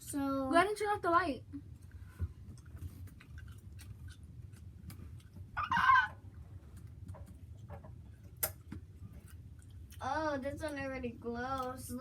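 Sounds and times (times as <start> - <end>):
low steady hum: 0.0 - 12.0
high-pitched squeal-like call: 5.6 - 6.2.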